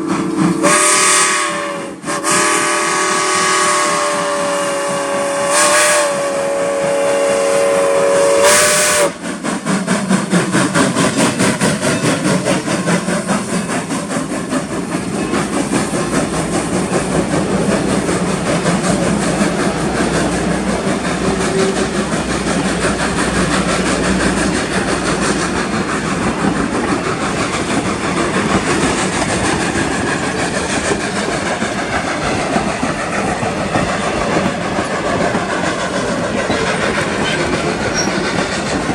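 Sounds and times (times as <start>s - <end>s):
steam locomotive exhaust and hiss: 0.0s - 38.9s
train rolling on rails: 0.0s - 38.9s
steam whistle blast: 0.6s - 9.2s.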